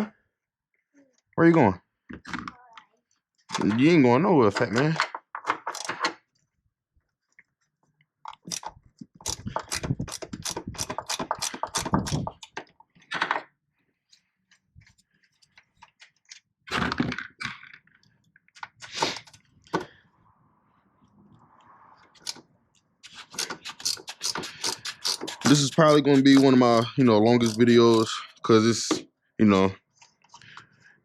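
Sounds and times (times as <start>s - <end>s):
hand tools clicking and knocking: 8.3s - 13.4s, 23.0s - 29.1s
loose hardware being handled: 23.0s - 29.0s.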